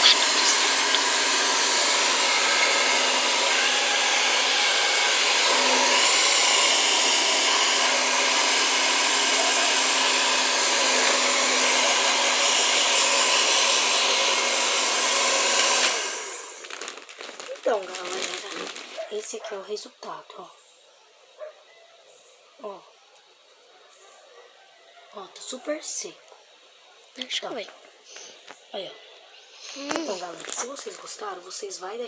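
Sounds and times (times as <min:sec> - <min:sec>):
hair dryer blowing air: 0:00.0 - 0:16.7.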